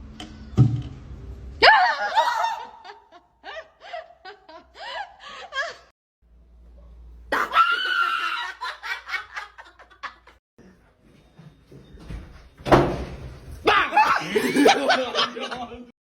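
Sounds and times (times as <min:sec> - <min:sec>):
person laughing: 0:14.0 - 0:15.8.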